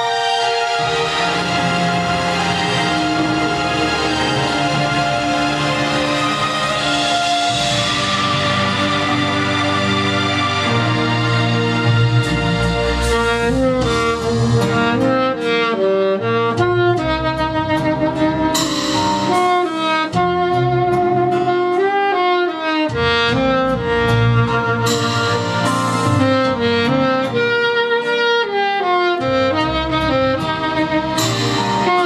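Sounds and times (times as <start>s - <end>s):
cymbal-like swells: 0.0s - 13.4s
backing track with bass: 0.0s - 32.0s
slow instrumental melody: 0.0s - 32.0s.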